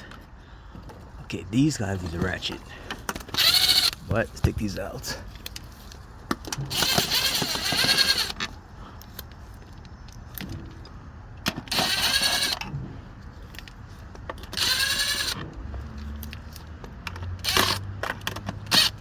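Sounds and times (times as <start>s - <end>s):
power tool motor whine: 3.4s - 4.0s, 6.7s - 8.4s, 11.7s - 12.7s, 14.5s - 15.4s, 17.4s - 17.9s, 18.7s - 19.0s.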